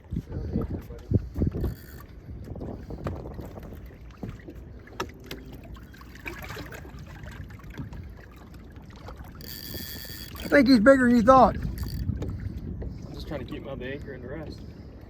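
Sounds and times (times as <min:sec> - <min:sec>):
wind and water rumble: 0:00.0 - 0:15.0
faint clicks and knocks: 0:11.6 - 0:12.4.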